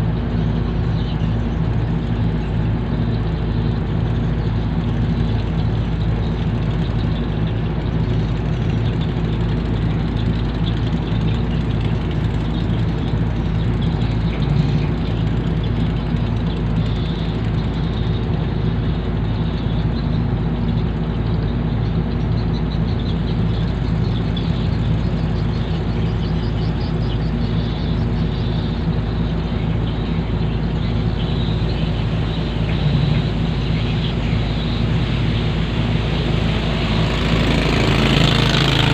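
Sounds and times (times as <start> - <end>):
diesel engines humming: 0.0 - 38.9.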